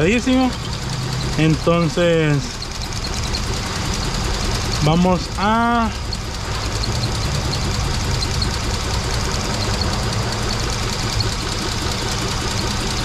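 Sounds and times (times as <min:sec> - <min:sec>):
engine idling rough with misfire: 0:00.0 - 0:13.0.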